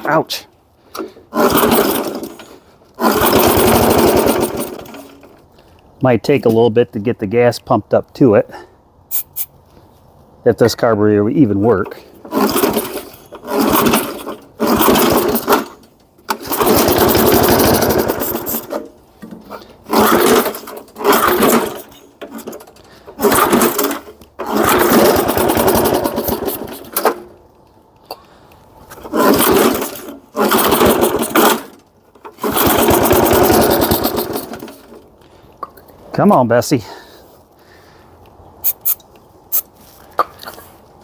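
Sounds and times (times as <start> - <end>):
lawnmower engine firing in bursts: 0.9 - 5.4, 11.7 - 27.4, 28.9 - 35.1.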